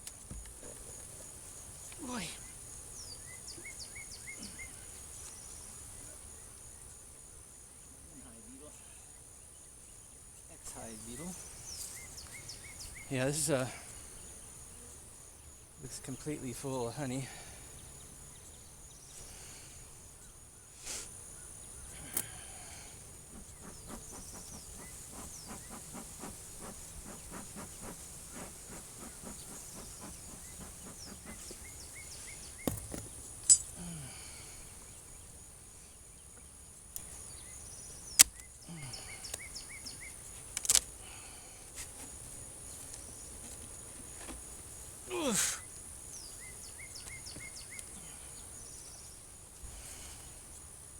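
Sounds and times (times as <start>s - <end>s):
insects chirping: 0.0s - 50.9s
wooden hive frames clicking: 40.5s - 41.0s.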